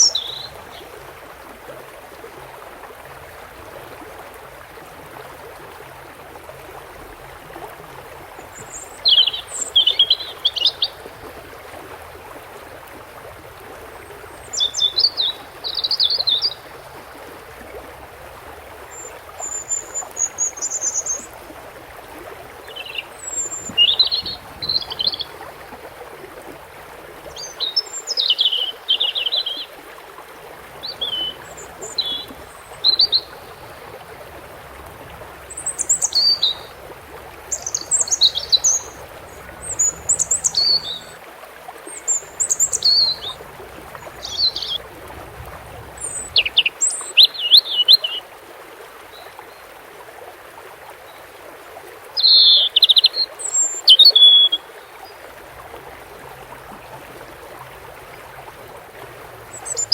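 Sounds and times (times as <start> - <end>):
songbird twittering: 0.0 - 0.8, 8.6 - 11.1, 14.4 - 17.0, 22.6 - 25.5, 27.3 - 29.7, 30.8 - 34.0, 35.5 - 36.8, 37.5 - 41.2, 41.9 - 43.4, 44.0 - 44.8, 46.0 - 48.2, 52.2 - 54.7, 59.5 - 59.9
running water: 0.0 - 59.9.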